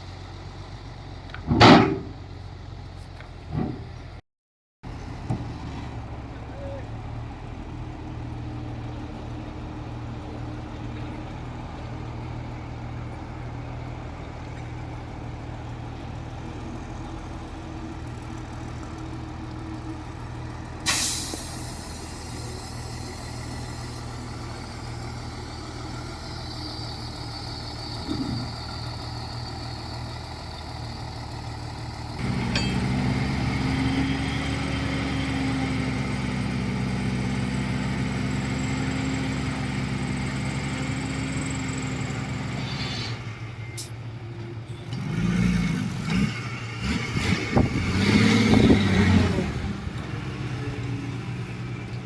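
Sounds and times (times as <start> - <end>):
heavy diesel machinery running: 4.8 - 52.0
truck air brake hiss: 20.8 - 24.5, 41.8 - 44.1.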